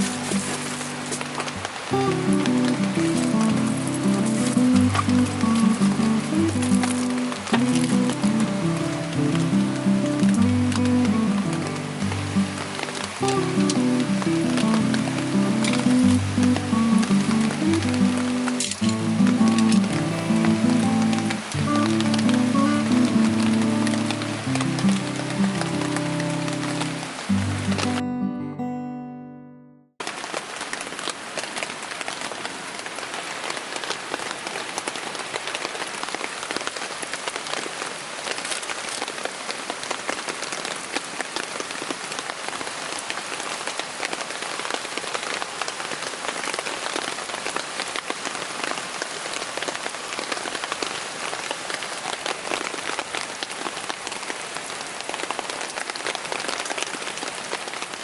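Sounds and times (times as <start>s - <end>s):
heavy rain spattering: 0.0s - 28.4s, 30.0s - 58.0s
guitar music: 0.0s - 30.0s.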